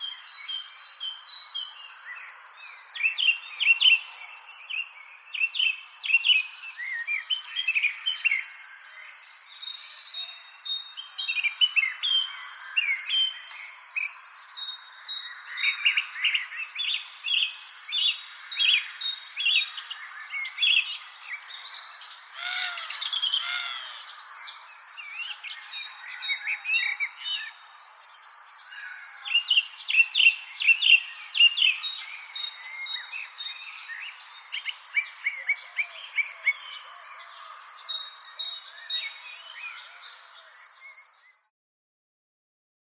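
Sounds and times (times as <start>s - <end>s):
songbirds chirping and singing: 0.0s - 41.5s.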